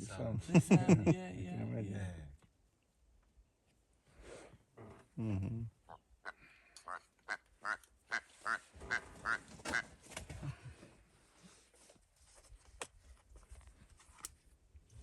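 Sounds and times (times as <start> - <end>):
bird croaking calls: 5.9 - 9.9.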